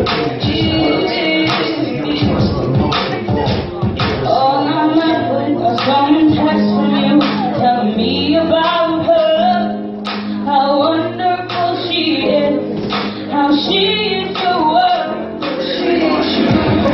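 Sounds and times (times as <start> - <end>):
steady bass line: 0.0 - 16.9
woman singing: 0.0 - 16.9.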